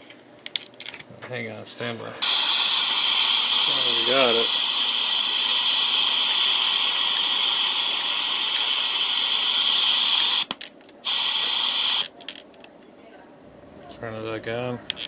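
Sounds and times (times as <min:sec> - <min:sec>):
radio static hiss: 0:01.3 - 0:12.4.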